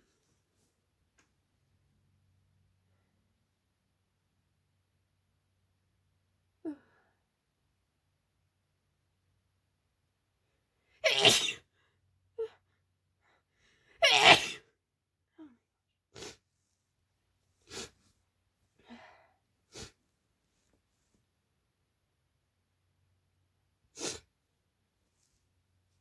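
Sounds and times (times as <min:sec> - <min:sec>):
woman sneezing: 0:11.0 - 0:11.7, 0:14.0 - 0:14.7.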